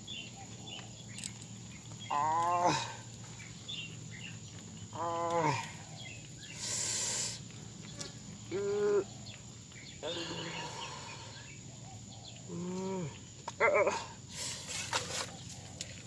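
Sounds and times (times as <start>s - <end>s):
drawn-out voiced calls: 1.9s - 15.8s.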